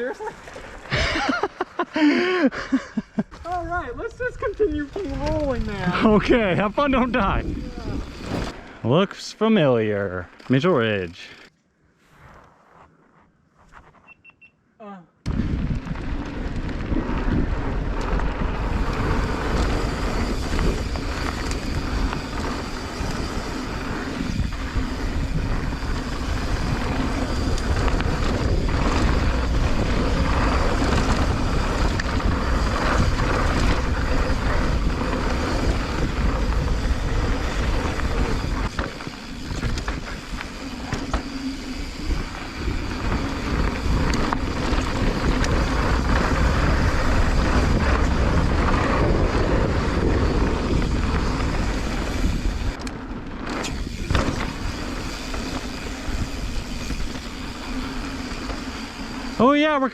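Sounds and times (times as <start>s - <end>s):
tyres rolling over dirt: 0.0s - 1.8s, 15.3s - 59.9s
wind on microphone: 15.3s - 52.9s
bike clattering over bumps: 15.3s - 59.4s.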